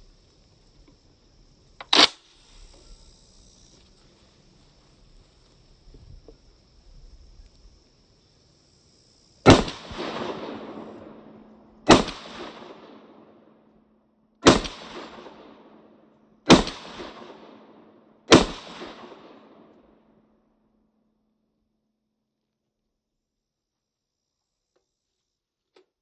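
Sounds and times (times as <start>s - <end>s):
rifle shots: 1.8s - 2.3s, 9.5s - 13.5s, 14.4s - 19.8s.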